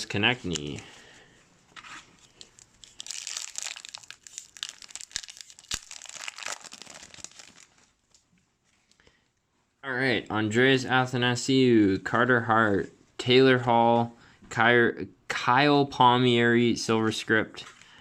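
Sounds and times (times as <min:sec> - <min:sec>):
plastic wrapper tearing and crinkling: 0:02.0 - 0:08.3
sharp plastic crackles: 0:02.1 - 0:09.0.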